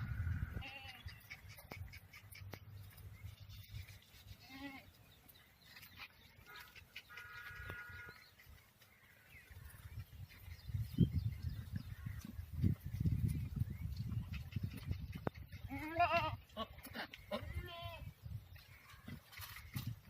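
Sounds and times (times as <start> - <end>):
goats bleating: 15.7 - 18.0.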